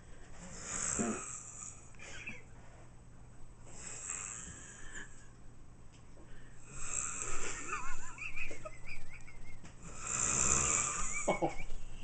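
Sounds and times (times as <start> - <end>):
person snoring heavily: 0.6 - 1.8, 3.7 - 5.1, 6.6 - 7.9, 9.8 - 11.2.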